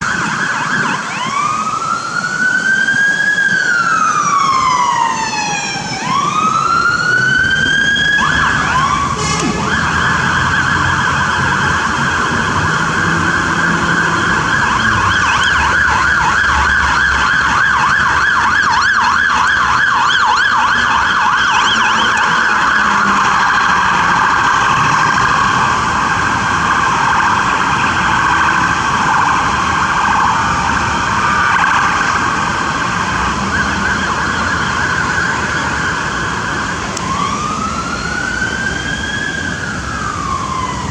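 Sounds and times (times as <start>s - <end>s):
fire truck electronic siren: 0.0s - 40.9s
steady low tones: 8.2s - 31.2s.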